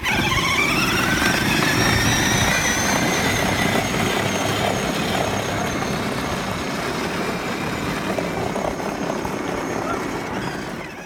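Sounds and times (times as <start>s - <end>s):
electric motor whining: 0.0s - 8.2s
wheels rumbling on ground: 0.0s - 11.0s.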